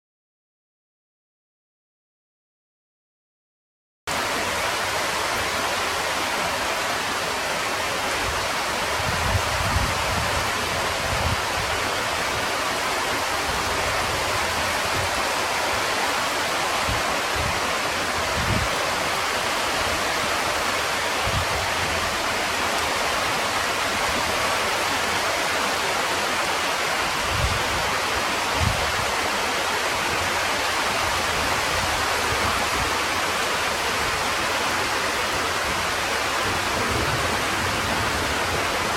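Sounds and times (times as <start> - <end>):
heavy rain pouring: 4.1 - 38.9.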